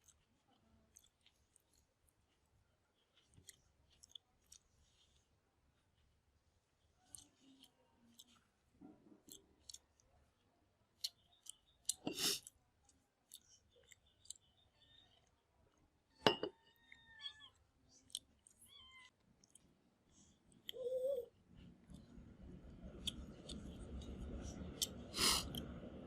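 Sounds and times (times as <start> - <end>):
chewing and lip smacks: 0.0 - 5.3, 7.0 - 8.5, 9.1 - 10.1, 11.0 - 15.9, 16.9 - 19.8, 22.9 - 25.7.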